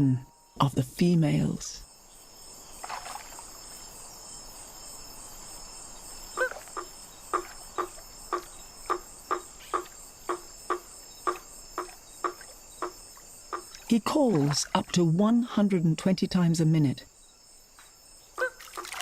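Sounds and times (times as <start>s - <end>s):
tree frog calling: 5.8s - 17.4s, 18.2s - 19.0s.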